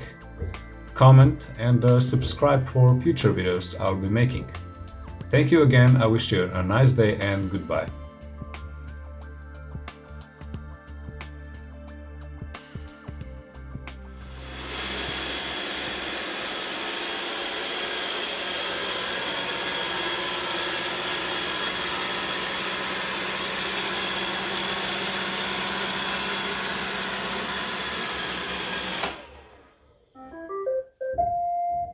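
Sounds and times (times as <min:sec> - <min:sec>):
robot vacuum whirring: 0:14.3 - 0:30.0.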